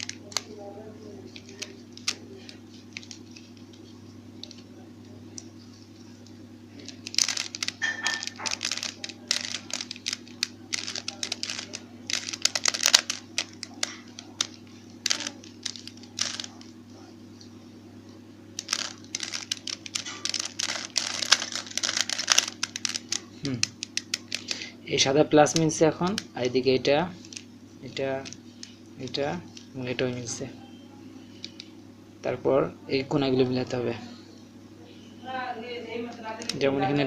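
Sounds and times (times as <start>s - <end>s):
steady low hum: 0.0s - 37.0s
plastic cube clicking as twisted: 7.0s - 16.6s, 18.6s - 24.5s.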